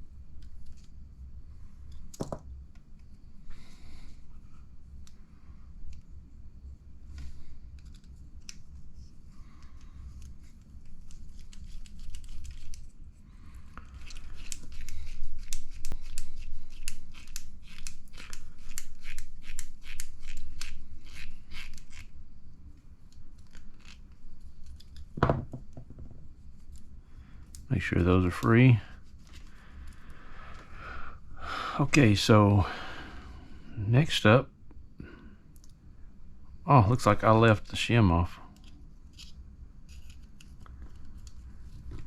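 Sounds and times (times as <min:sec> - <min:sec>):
parts scraping and clicking: 0:07.1 - 0:08.8, 0:09.5 - 0:13.0, 0:13.8 - 0:22.1, 0:23.0 - 0:25.2
knock: 0:25.2 - 0:26.2.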